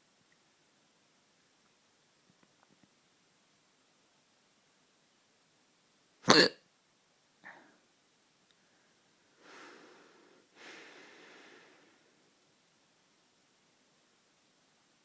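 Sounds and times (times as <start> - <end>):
person hiccuping: 6.3 - 6.6
soft breathy sounds: 7.4 - 7.9, 8.5 - 12.4.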